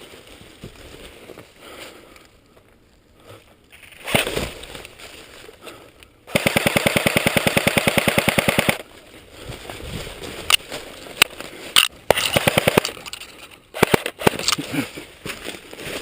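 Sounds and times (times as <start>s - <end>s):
airsoft gun full-auto burst: 6.3s - 8.8s, 12.1s - 12.9s, 13.8s - 14.5s.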